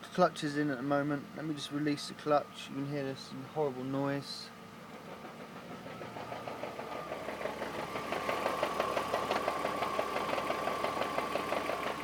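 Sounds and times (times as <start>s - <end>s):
car engine idling: 0.0s - 12.0s
fast knocking rattle: 4.9s - 12.0s.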